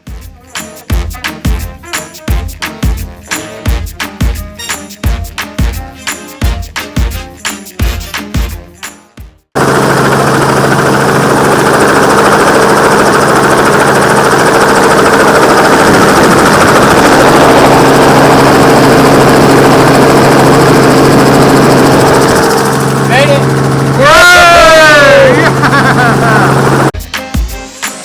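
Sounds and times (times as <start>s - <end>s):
helicopter engine and rotors: 9.6s - 24.2s, 25.0s - 27.0s.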